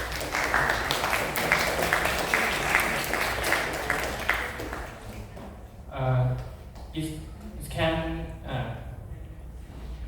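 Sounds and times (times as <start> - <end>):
audience applauding: 0.0 - 5.4.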